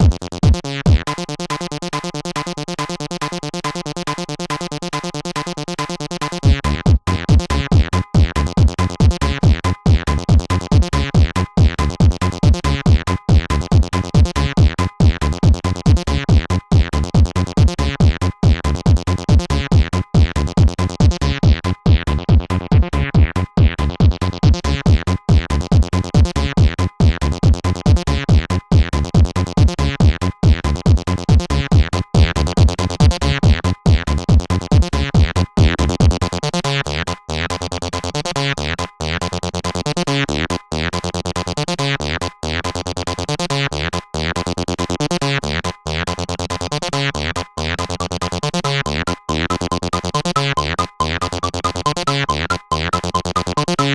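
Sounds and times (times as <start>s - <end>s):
fast drum machine beat: 0.0s - 53.9s
synthesizer riffs: 5.4s - 39.8s, 47.3s - 53.9s.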